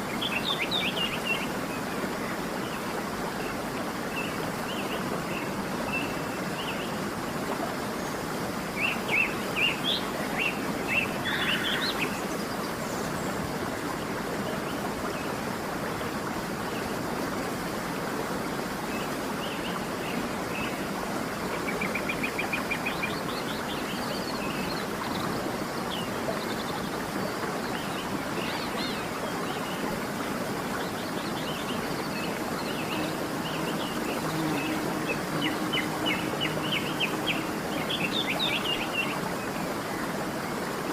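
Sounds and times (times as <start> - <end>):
waterfall rushing: 0.0 - 40.9
small birds chirping: 31.0 - 39.2.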